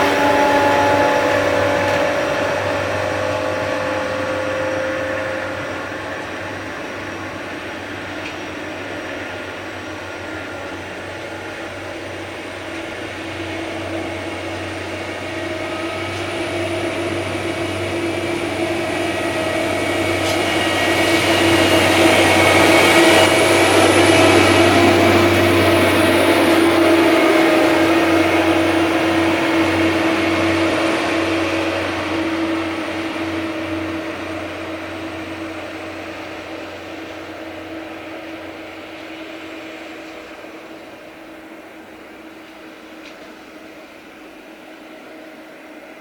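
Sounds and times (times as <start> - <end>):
track machine whining and humming: 0.0 - 46.0.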